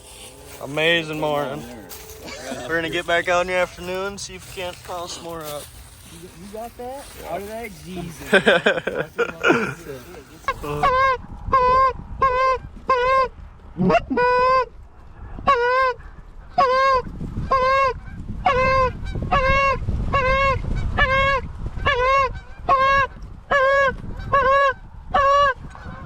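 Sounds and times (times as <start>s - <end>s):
goose call honks: 15.4s - 16.0s, 16.6s - 26.0s.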